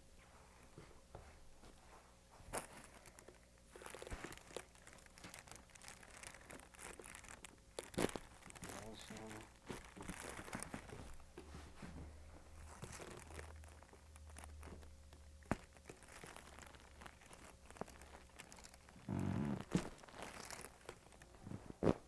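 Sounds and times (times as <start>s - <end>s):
soft rustling and crinkling: 0.0s - 22.0s
spinal joint cracking: 2.5s - 11.5s, 12.6s - 22.0s.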